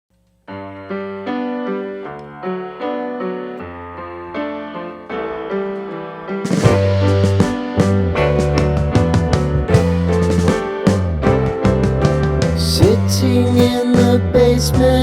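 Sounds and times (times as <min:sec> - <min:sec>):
electric piano chords: 0:00.5 - 0:15.0
drum kit: 0:06.4 - 0:15.0.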